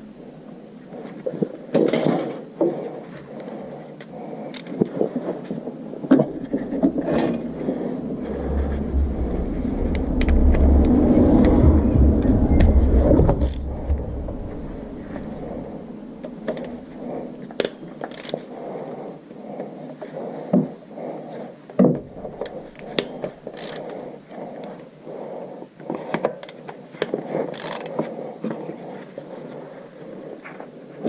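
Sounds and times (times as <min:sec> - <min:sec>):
low rumble: 0:06.2 - 0:17.6, 0:22.0 - 0:23.6.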